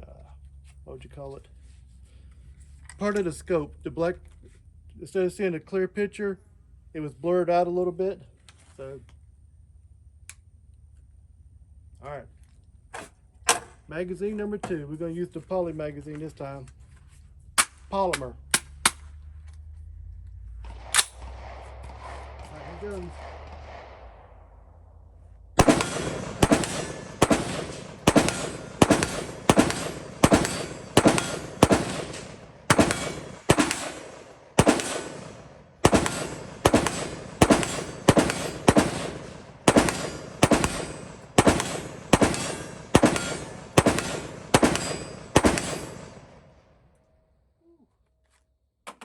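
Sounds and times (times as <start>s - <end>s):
rapid rifle shots: 20.7s - 24.8s, 25.6s - 46.5s.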